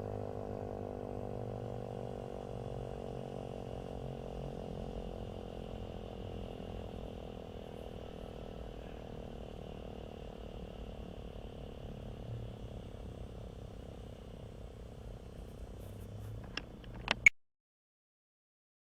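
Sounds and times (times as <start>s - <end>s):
handling clicks on device: 15.9s - 17.4s.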